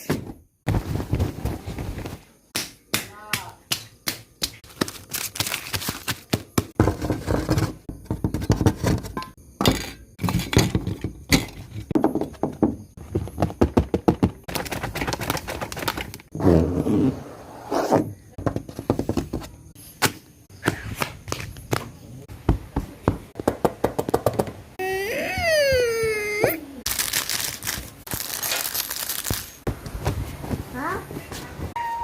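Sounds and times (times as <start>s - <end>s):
knocks and thuds: 6.4s - 16.1s.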